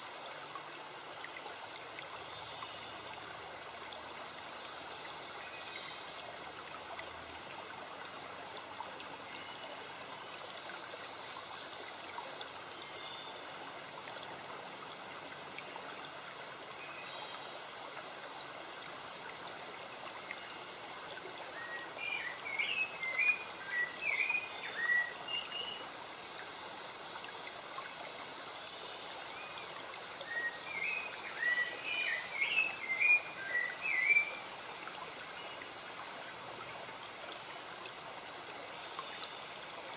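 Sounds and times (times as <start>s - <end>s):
stream running: 0.0s - 39.9s
songbird chirping: 21.6s - 25.9s, 28.6s - 34.5s.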